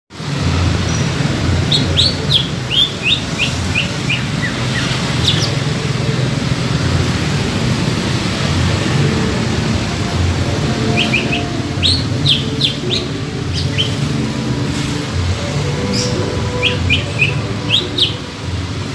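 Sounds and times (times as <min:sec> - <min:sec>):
bird whistling: 0:01.6 - 0:05.6, 0:10.7 - 0:14.1, 0:15.8 - 0:18.3.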